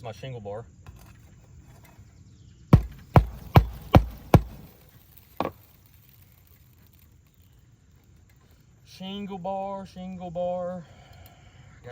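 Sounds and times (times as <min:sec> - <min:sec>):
metal bar striking under shingle: 0:02.7 - 0:04.8.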